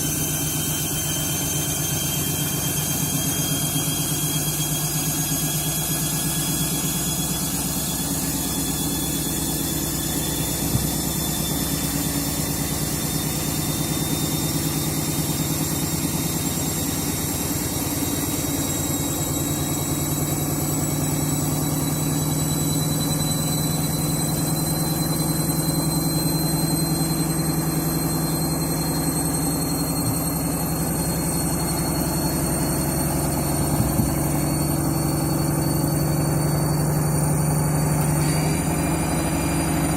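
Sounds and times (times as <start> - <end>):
washing machine spinning: 0.0 - 39.9
washing machine drum knock: 10.2 - 11.4.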